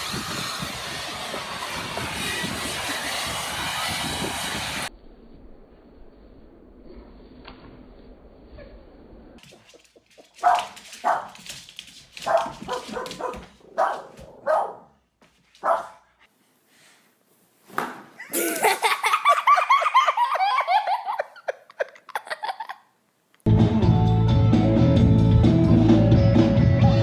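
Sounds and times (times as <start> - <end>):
dog barking: 10.4 - 11.4, 12.2 - 15.0, 15.6 - 16.1
dog yelping: 12.3 - 14.8.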